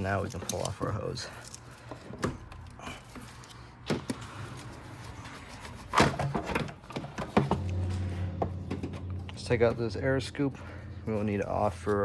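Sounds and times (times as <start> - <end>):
steady low hum: 6.8 - 12.0.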